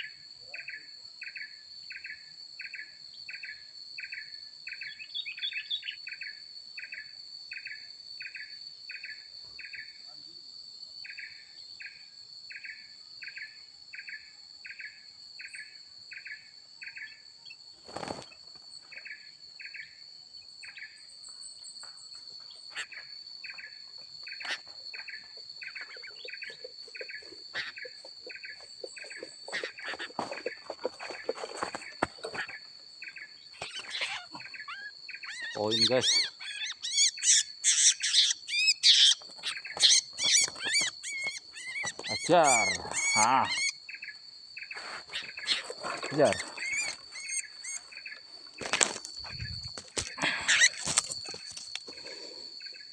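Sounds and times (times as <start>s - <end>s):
high insect drone: 0.0s - 52.9s
pulsing insect chirp: 0.0s - 52.9s
scratchy bird chirps: 22.5s - 43.8s, 44.6s - 52.8s.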